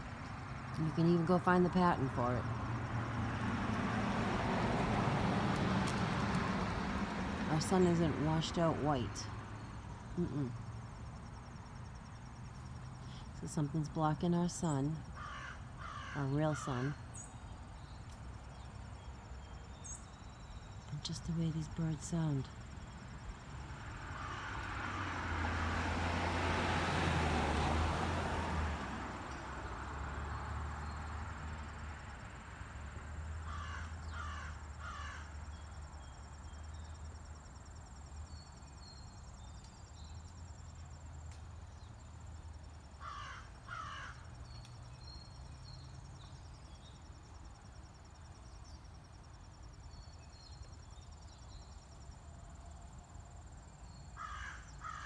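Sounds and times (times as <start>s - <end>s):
crow cawing: 15.2s - 16.9s, 24.1s - 24.7s, 33.4s - 35.4s, 43.0s - 44.2s, 54.2s - 55.0s.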